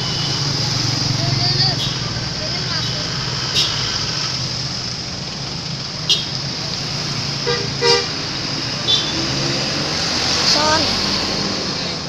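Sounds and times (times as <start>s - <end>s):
low hum of vehicles: 0.0s - 12.0s
bus horn honks: 6.1s - 6.3s, 7.4s - 8.2s, 8.8s - 9.3s.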